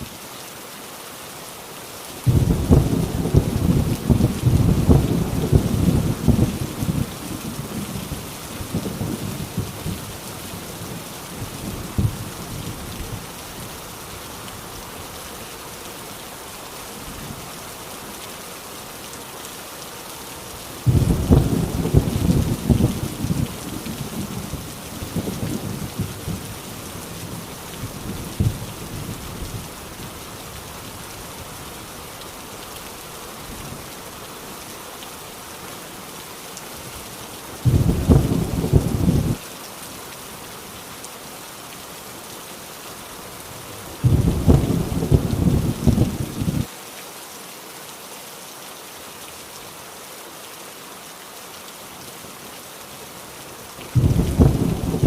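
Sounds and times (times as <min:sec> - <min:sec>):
heavy rain falling: 0:00.0 - 0:55.0
thunder rumbling: 0:02.3 - 0:10.1, 0:11.7 - 0:13.2, 0:20.8 - 0:29.6, 0:37.6 - 0:39.4, 0:44.0 - 0:46.7, 0:54.0 - 0:55.0
thunder clap: 0:20.9 - 0:23.5, 0:37.7 - 0:39.4, 0:44.0 - 0:46.5, 0:54.0 - 0:55.0.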